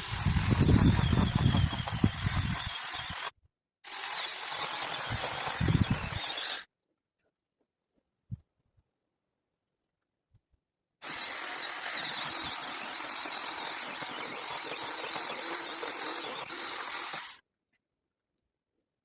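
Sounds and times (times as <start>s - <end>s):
chainsaw running: 0.0s - 3.3s, 3.9s - 6.7s, 11.0s - 17.4s.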